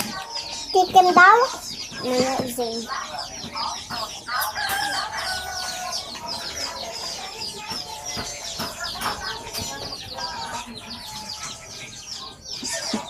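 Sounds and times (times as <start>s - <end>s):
chickens clucking: 0.0s - 13.0s.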